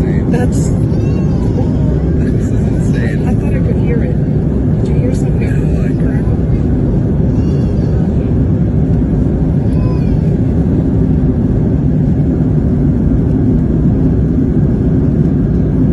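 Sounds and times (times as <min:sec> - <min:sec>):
airliner cabin rumble: 0:00.0 - 0:15.9.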